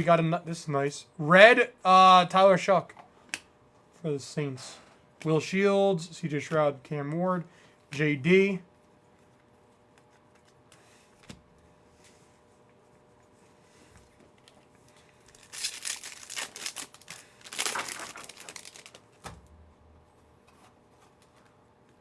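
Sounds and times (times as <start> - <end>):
foil wrapper tearing and crinkling: 15.2 - 19.1.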